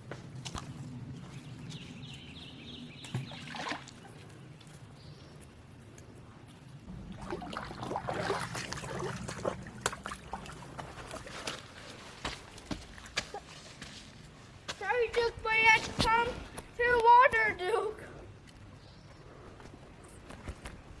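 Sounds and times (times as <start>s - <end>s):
creek water trickling: 2.4s - 5.9s, 6.5s - 14.3s
footsteps splashing through water: 3.0s - 4.7s, 6.9s - 14.1s.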